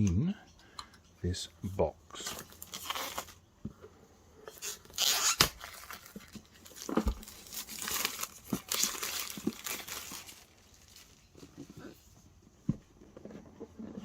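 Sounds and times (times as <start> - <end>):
cardboard packaging crinkling: 2.2 - 3.4, 4.5 - 11.8.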